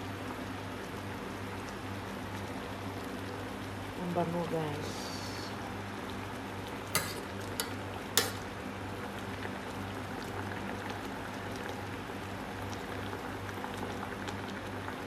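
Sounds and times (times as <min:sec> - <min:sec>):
pot simmering: 0:00.0 - 0:15.0.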